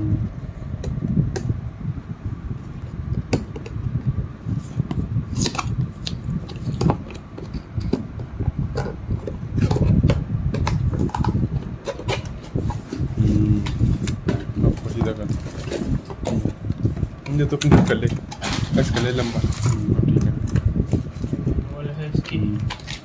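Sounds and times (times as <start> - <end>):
steady low rumble: 0.0 - 23.0
cardboard rubbing and scraping: 11.0 - 20.0.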